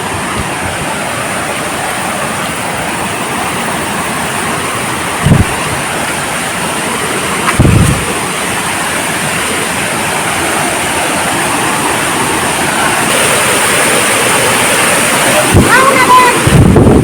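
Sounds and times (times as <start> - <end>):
waterfall roaring: 0.0 - 17.0
low thumps: 5.2 - 5.6, 7.4 - 8.3.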